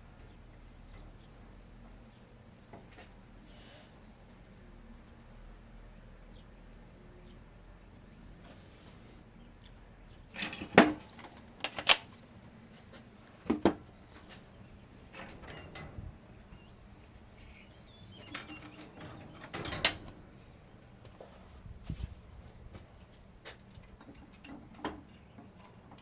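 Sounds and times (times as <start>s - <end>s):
knocks and clinks of tools: 10.3s - 12.0s, 15.1s - 20.3s.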